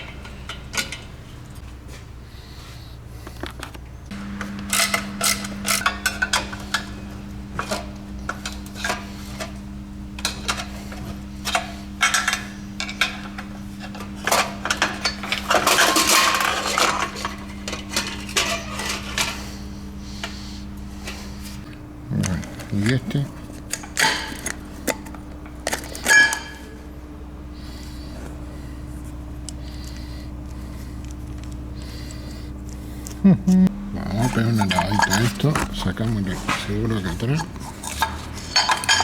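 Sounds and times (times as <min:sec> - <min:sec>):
steady low hum: 0:00.0 - 0:39.0
metal parts and tools clinking: 0:14.2 - 0:19.4, 0:22.3 - 0:26.7, 0:34.2 - 0:39.0.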